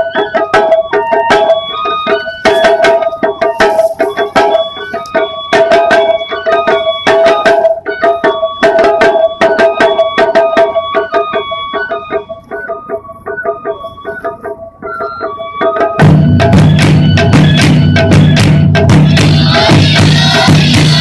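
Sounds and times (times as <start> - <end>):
high melody of short notes: 0.0 - 21.0
rapid light drum strikes: 0.5 - 10.7, 16.0 - 21.0
steady ringing tone: 0.8 - 7.4.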